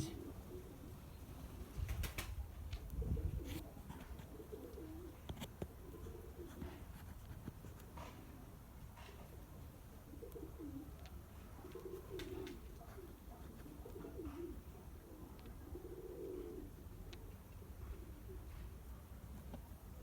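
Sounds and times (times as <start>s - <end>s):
pigeons cooing: 0.0s - 6.9s, 9.9s - 18.9s.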